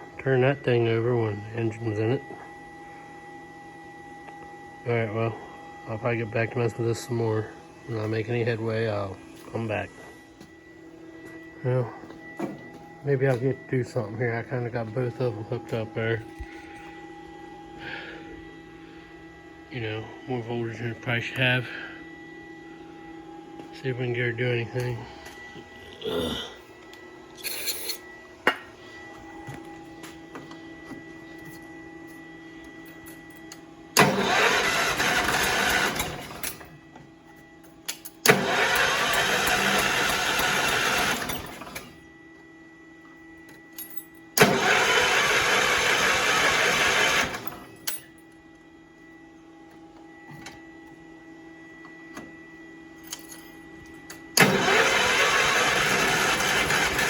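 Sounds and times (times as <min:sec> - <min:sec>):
engine cranked by electric starter: 0:33.9 - 0:36.7, 0:38.2 - 0:42.0, 0:44.4 - 0:47.7, 0:54.3 - 0:57.0.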